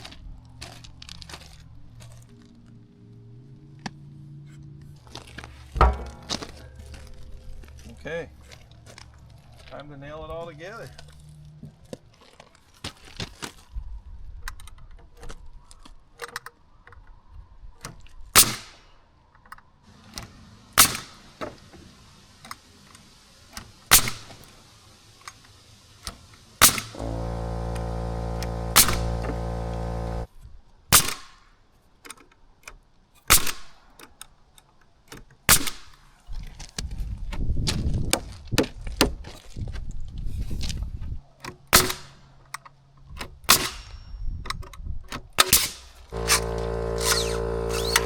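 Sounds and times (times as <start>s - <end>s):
nail gun shots: 18.4s - 18.8s, 20.8s - 21.2s, 23.9s - 24.4s, 26.6s - 30.2s, 30.9s - 31.4s, 33.3s - 33.7s, 35.5s - 35.9s, 41.8s - 42.1s, 43.5s - 44.0s, 45.4s - 48.0s
motor running: 26.6s - 30.3s, 46.1s - 48.0s.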